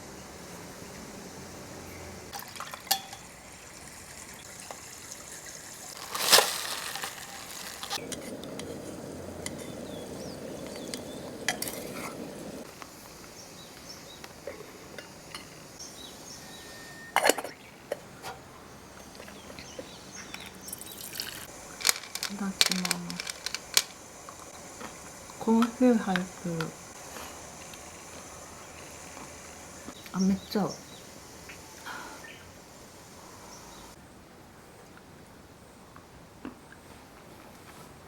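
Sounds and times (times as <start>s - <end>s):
cutlery and tableware clinking: 2.8s - 3.3s, 14.9s - 15.6s, 16.8s - 17.6s.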